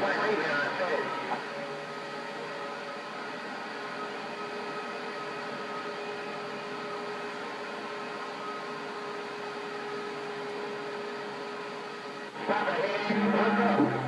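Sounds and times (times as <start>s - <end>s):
radio static hiss: 0.0s - 3.4s, 11.1s - 14.0s
faint steady whistle: 1.4s - 12.3s.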